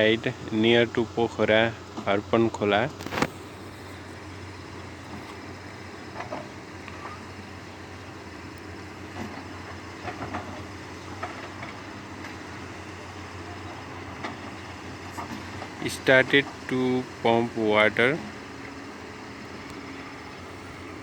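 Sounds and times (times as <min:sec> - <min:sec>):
machine engine humming: 0:00.0 - 0:21.0
light knocks and clanks: 0:09.1 - 0:12.6.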